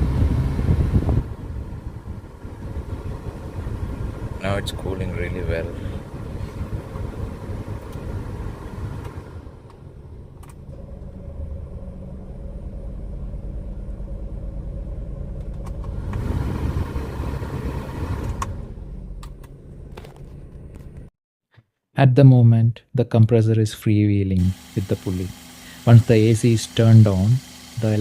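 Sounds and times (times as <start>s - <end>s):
car engine idling: 0.0s - 21.1s.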